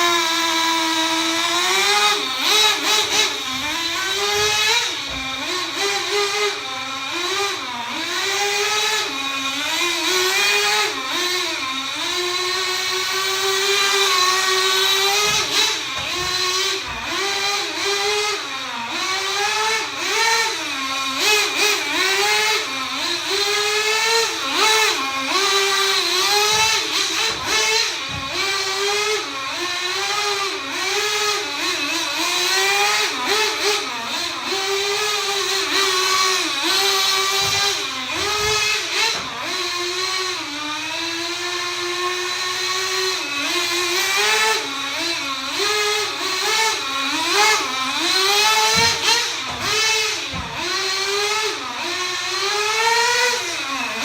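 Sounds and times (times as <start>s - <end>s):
nitro engine revving high buzz: 0.0s - 54.0s.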